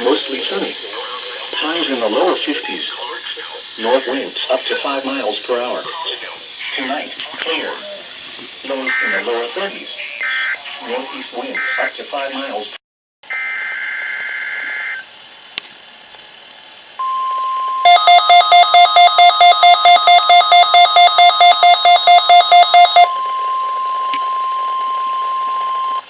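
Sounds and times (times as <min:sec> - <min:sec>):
radio hiss: 0:00.0 - 0:12.8
rapid alarm beeps: 0:17.0 - 0:26.0
steady warning alarm tone: 0:17.0 - 0:26.0
warbling two-pitch data tones: 0:17.8 - 0:26.0.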